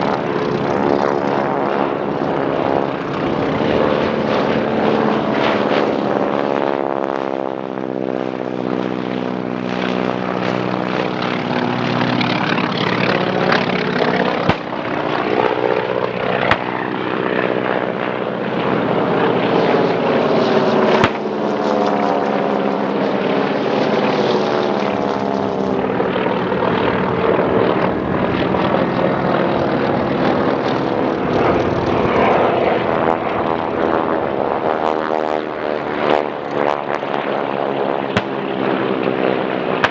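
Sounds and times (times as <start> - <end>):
propeller aircraft engines passing: 0.0 - 39.9
sharp cracks: 14.3 - 14.9, 16.4 - 16.8, 20.9 - 21.3, 38.1 - 38.5.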